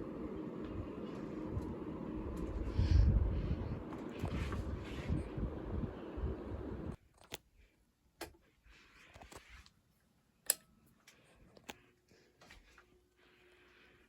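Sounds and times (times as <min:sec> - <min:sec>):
fan air buffeting microphone: 0:00.0 - 0:07.0.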